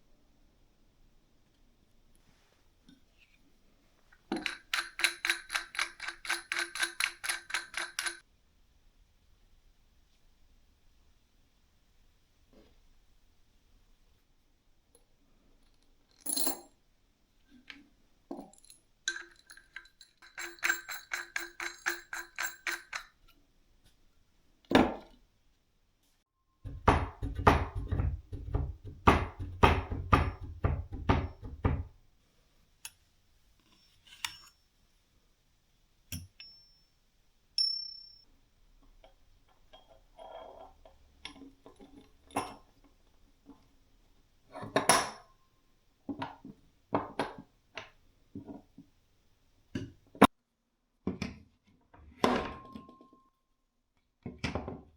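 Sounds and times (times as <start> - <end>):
metal tools clinking: 4.3 - 8.2, 18.4 - 23.1
metal rattling: 26.7 - 32.0.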